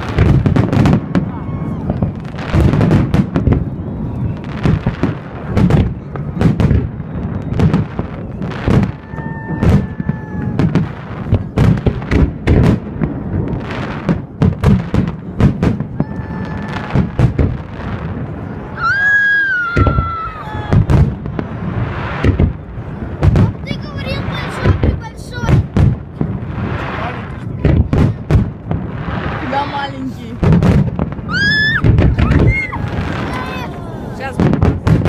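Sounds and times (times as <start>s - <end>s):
fireworks bursting with booms: 0.0s - 35.0s
fireworks whistling: 0.0s - 35.0s.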